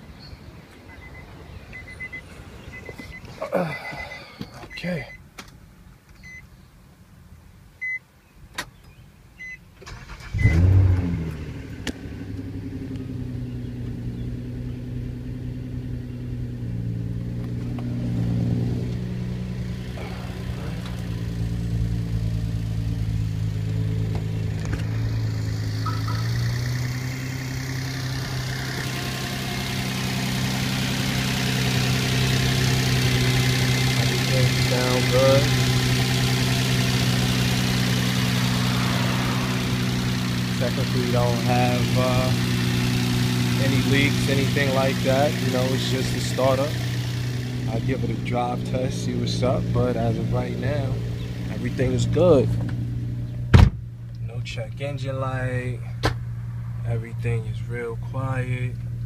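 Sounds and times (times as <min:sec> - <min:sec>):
car engine starting and idling: 0:00.6 - 0:05.6, 0:08.6 - 0:59.0
short beeps: 0:00.9 - 0:05.2, 0:06.2 - 0:06.5, 0:07.8 - 0:08.0, 0:25.8 - 0:26.5.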